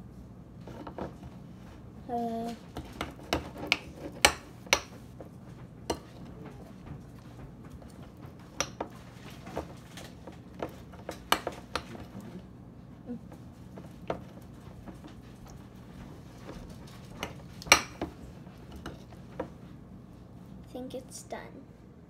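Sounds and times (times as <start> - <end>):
faint steady hum: 0.0 - 22.0
utensil clinking against a bowl: 5.8 - 12.4.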